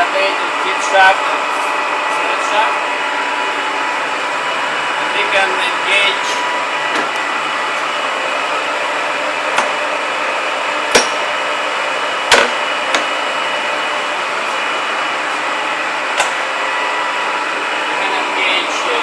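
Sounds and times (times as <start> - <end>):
lathe humming: 0.0 - 19.0
sharp metallic clunks: 10.9 - 11.3.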